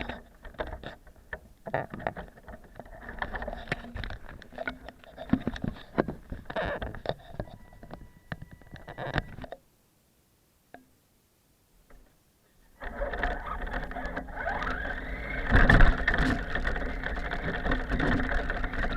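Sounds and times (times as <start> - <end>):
toy car electric motor whirring: 12.8 - 18.9.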